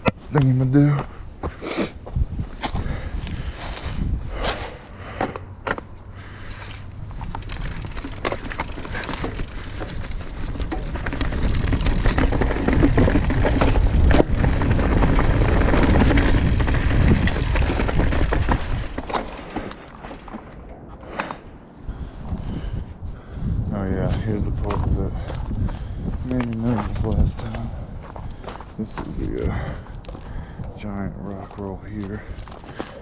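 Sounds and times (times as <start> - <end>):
bike tyres crunching over rock: 2.3 - 21.5, 31.4 - 33.0
bike rattling and knocking: 2.6 - 22.8, 31.4 - 33.0.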